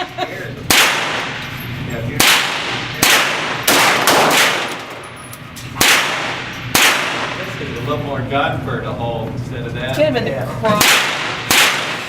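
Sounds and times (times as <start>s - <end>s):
gunshots with ringing echo: 0.7s - 1.4s, 2.2s - 5.0s, 5.8s - 7.5s, 10.8s - 12.0s.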